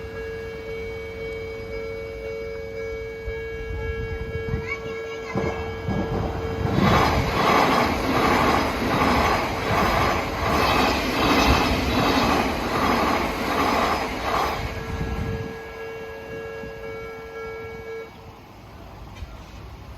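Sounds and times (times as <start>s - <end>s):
level crossing warning bell: 0.0s - 18.5s
train wheels clattering: 5.1s - 15.5s.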